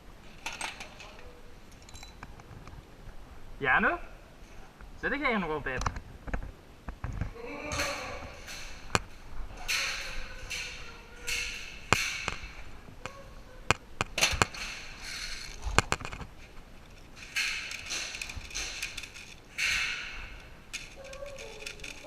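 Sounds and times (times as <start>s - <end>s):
sharp clicks and knocks: 5.8s - 22.0s.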